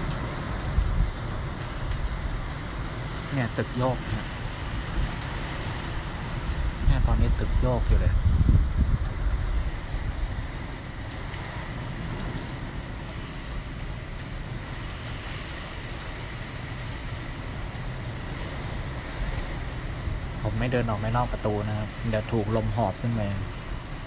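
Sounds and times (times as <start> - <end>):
strong wind around building: 0.0 - 24.0.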